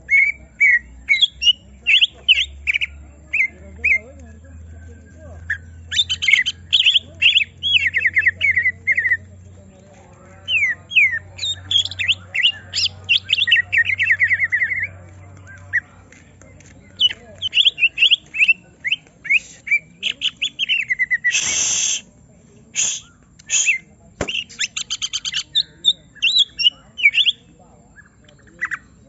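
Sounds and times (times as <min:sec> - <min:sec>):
bird singing sharp falling notes: 0:24.2 - 0:27.4.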